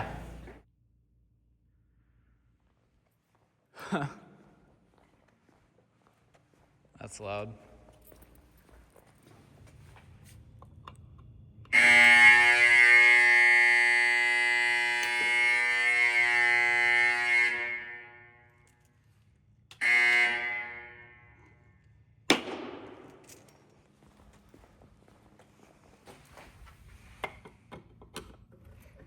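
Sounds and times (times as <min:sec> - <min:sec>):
fire alarm horn buzzing: 0:11.6 - 0:22.3.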